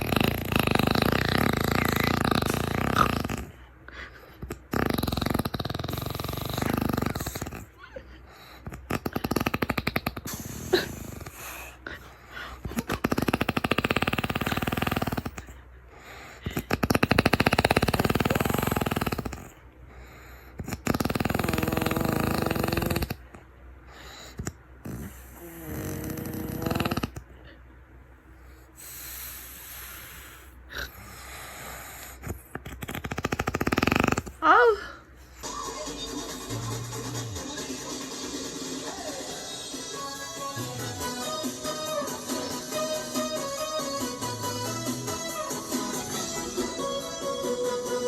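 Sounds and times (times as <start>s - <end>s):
man snoring: 0.0s - 3.7s, 4.3s - 7.8s, 8.6s - 12.0s, 12.6s - 15.5s, 16.4s - 19.6s, 20.6s - 23.2s, 24.3s - 27.2s, 28.8s - 34.7s, 36.5s - 37.6s, 38.9s - 48.0s.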